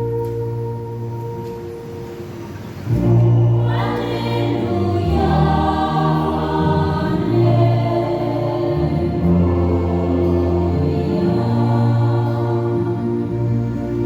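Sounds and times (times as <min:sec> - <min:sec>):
church choir singing a hymn: 0:02.9 - 0:14.0.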